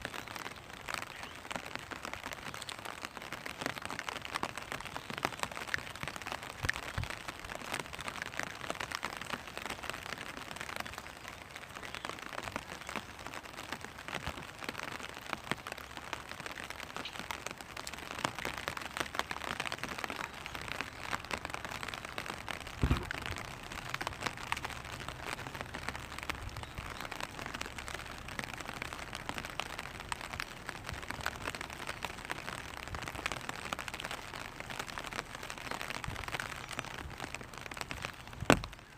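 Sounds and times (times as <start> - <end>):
rain ticking on umbrella: 0.0 - 38.9.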